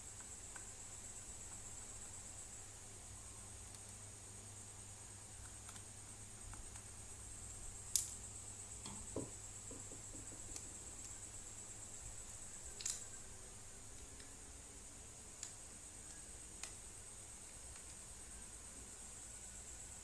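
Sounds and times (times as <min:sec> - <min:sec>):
soft knock: 0:08.9 - 0:10.6.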